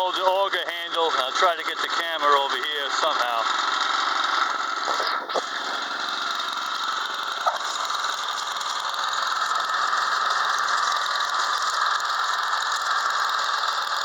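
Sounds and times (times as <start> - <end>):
snowblower running: 0.0 - 14.0.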